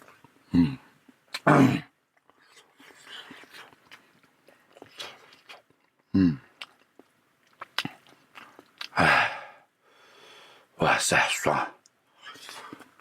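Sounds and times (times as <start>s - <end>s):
chewing with small clicks: 2.1s - 9.0s.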